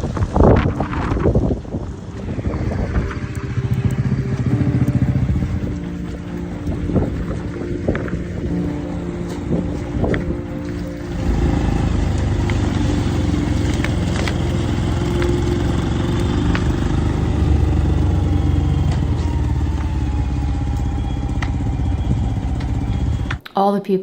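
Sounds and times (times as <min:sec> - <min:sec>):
road and wind noise: 0:00.0 - 0:23.4
vehicle engine rumbling: 0:00.0 - 0:23.4.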